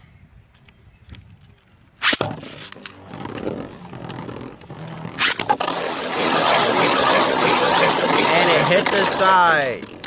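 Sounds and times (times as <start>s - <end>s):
spinning top launch zip: 2.0s - 10.0s
spinning tops whirring and scraping: 2.0s - 10.0s.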